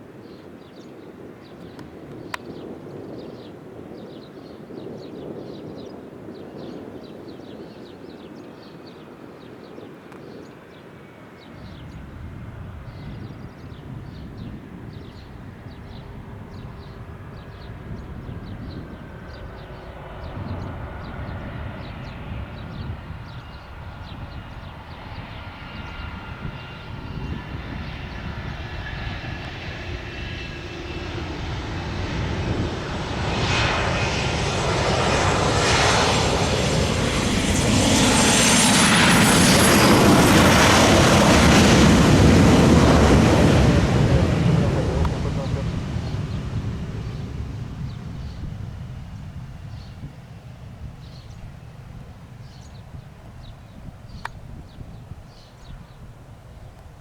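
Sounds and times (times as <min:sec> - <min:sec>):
jet engines whining: 0:25.6 - 0:55.0.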